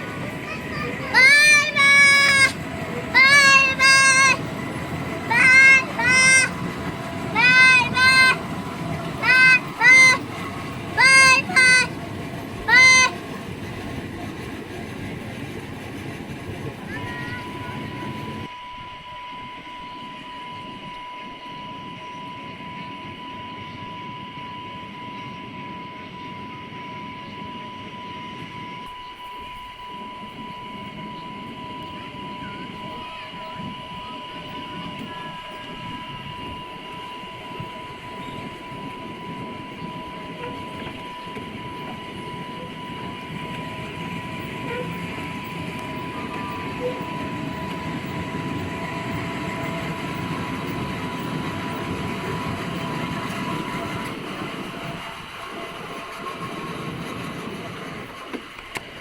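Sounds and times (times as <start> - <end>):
crossing signal high tone: 0.0 - 13.9, 16.9 - 56.5
miniature train running on track: 0.0 - 59.0.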